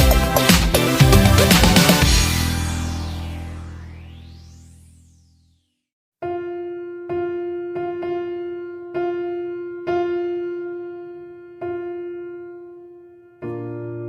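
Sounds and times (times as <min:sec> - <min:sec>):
soft electric piano notes: 0:06.3 - 0:14.0.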